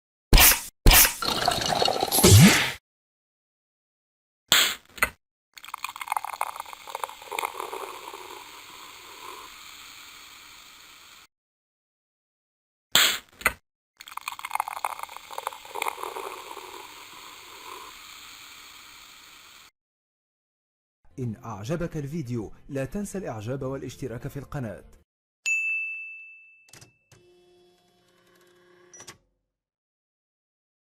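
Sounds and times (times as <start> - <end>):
soda pouring and fizzing: 1.0 - 2.8, 5.6 - 11.3, 14.0 - 19.7.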